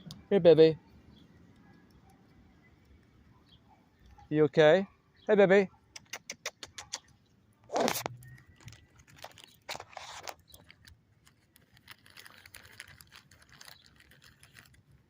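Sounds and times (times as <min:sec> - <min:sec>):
squirrel crunching a peanut: 0:01.1 - 0:03.3, 0:05.9 - 0:15.0.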